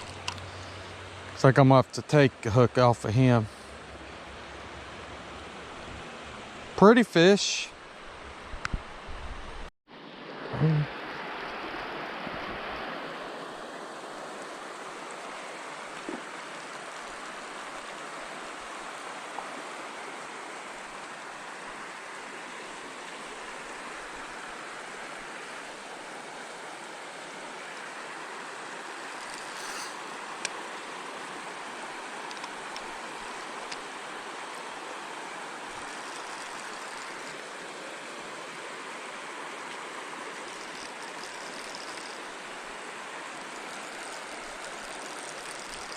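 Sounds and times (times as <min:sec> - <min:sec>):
faint small clicks and knocks: 0:00.0 - 0:00.5, 0:32.2 - 0:33.8
stream running over rocks: 0:00.0 - 0:09.1, 0:09.9 - 0:45.9.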